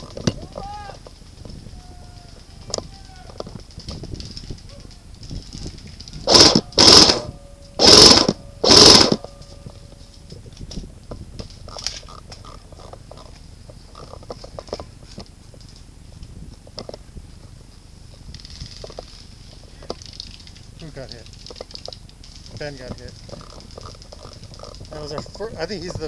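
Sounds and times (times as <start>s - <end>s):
airsoft rifle full-auto bursts: 6.2s - 9.3s.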